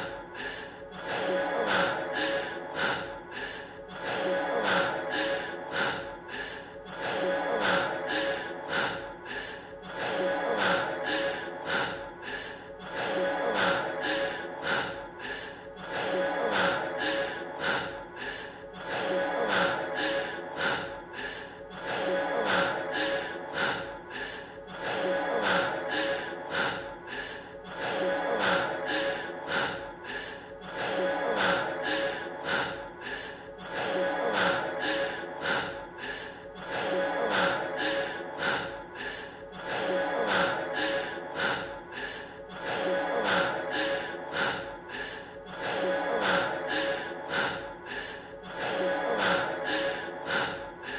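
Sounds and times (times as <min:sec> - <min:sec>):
man panting heavily: 0:00.0 - 0:50.9.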